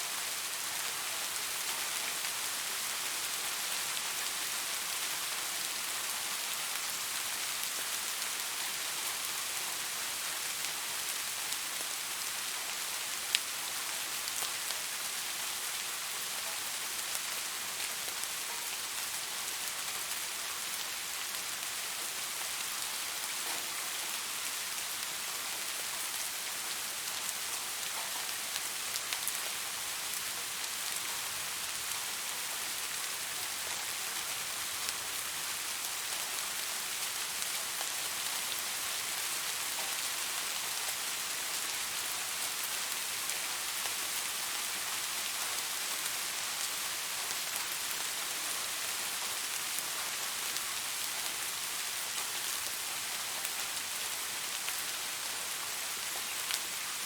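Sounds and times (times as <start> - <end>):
light rain falling: 0.0 - 57.0.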